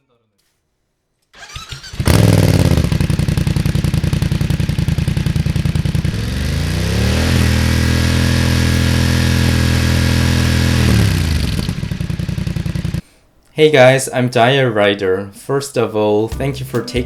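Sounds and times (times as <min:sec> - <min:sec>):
motorcycle engine idling and revving: 0:01.4 - 0:13.0.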